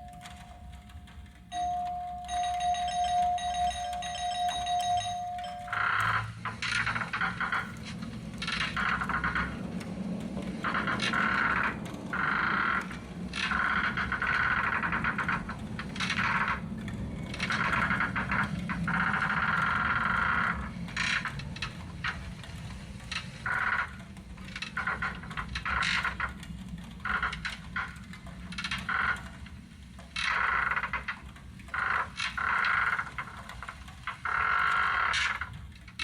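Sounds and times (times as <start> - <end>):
low steady hum: 0.0 - 6.1.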